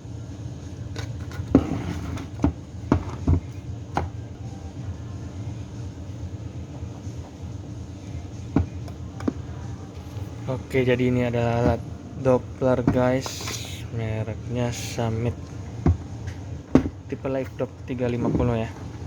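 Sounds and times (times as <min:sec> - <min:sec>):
low static hum: 0:00.0 - 0:19.0
sharp knocks and crackles: 0:15.4 - 0:17.1.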